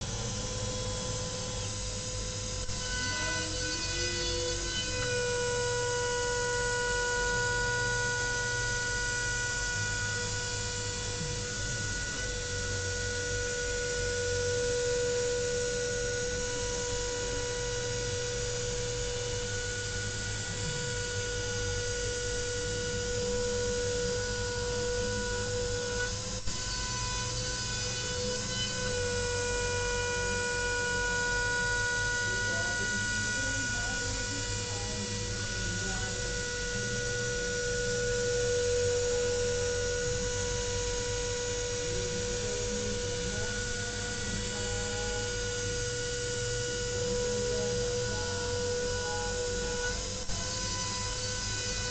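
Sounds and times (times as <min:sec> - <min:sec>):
milling machine spindle whine: 0:00.0 - 0:51.9
low machine rumble: 0:29.0 - 0:51.5.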